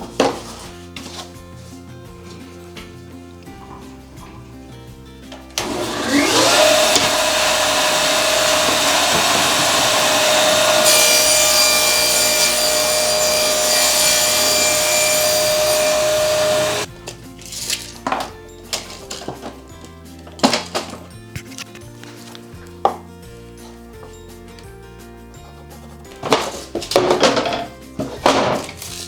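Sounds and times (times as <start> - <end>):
table saw whining: 5.6 - 16.9.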